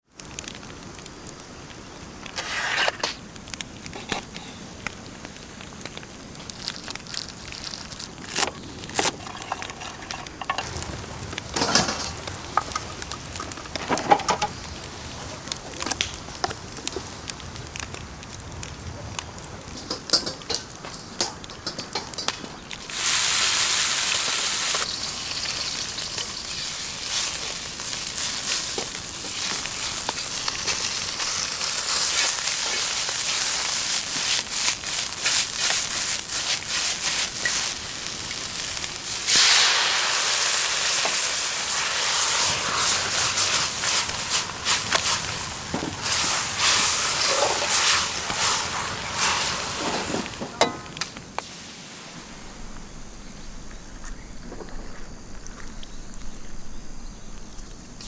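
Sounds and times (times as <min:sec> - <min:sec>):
food sizzling in hot pan: 0:00.0 - 0:52.5
kitchen knocks and clicks: 0:19.8 - 0:22.6.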